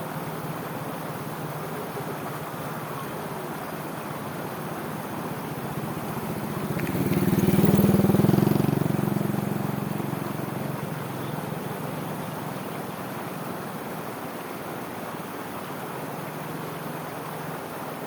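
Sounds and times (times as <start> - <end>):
rushing water: 0.0 - 18.0
vehicle engine passing: 5.1 - 11.1.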